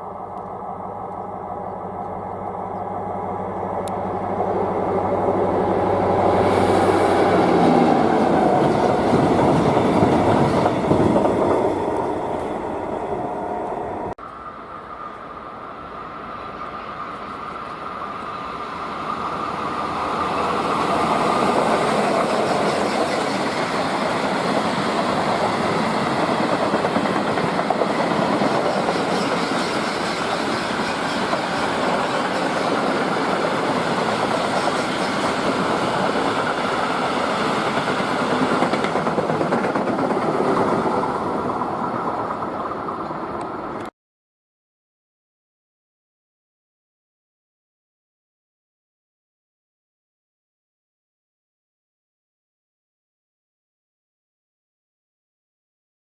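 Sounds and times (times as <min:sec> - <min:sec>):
freight train wheels on rails: 0:00.0 - 0:43.9.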